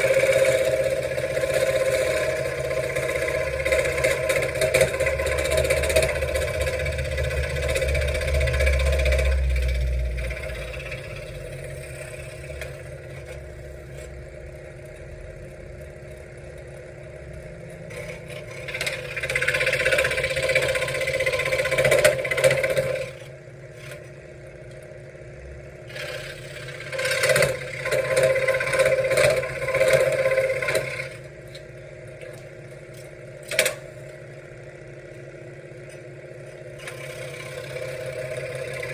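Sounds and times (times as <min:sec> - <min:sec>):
scroll saw cutting wood: 0:00.0 - 0:14.1, 0:17.9 - 0:24.1, 0:25.9 - 0:31.3, 0:36.8 - 0:38.9.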